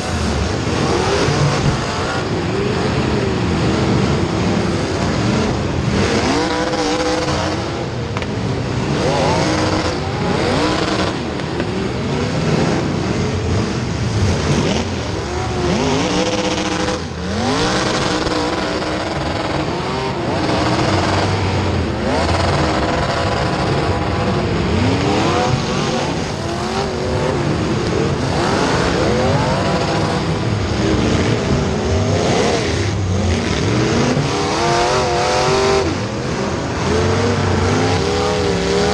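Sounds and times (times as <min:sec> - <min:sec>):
race car engines: 0:00.0 - 0:38.9
race cars passing: 0:00.0 - 0:38.9.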